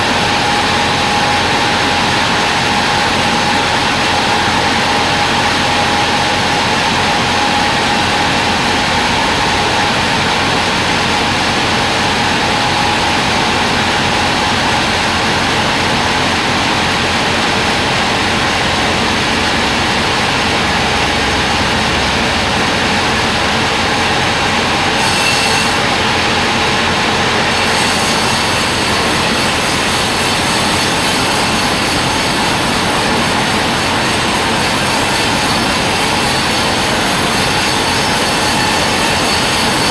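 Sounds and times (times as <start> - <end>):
band sawmill running: 0.0 - 39.9.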